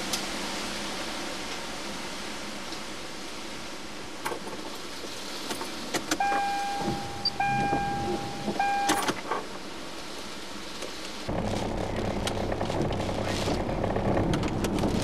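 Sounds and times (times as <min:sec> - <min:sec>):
electronic warning chime: 0:06.2 - 0:09.1.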